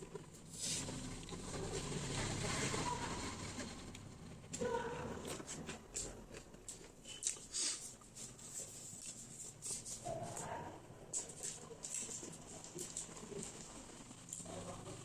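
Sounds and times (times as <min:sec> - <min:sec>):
chewing: 0:00.0 - 0:15.0
wet mouth clicks and lip smacks: 0:06.7 - 0:07.6.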